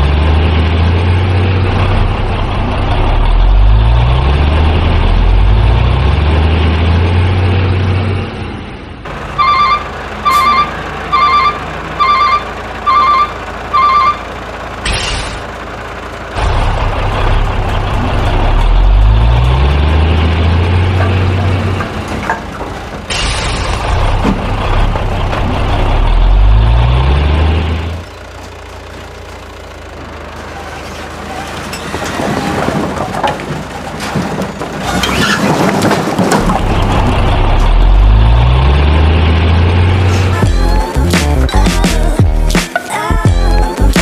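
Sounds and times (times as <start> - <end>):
heavy truck engine revving: 0.0 - 44.0
truck reversing alarm beeps: 9.3 - 14.4.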